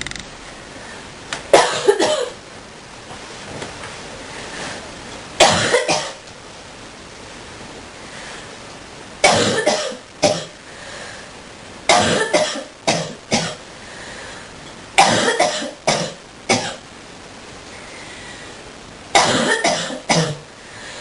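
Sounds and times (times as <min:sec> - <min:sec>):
person coughing deeply: 0:01.6 - 0:02.4, 0:05.4 - 0:06.2, 0:09.2 - 0:10.6, 0:11.9 - 0:13.6, 0:15.0 - 0:16.8, 0:19.2 - 0:20.4.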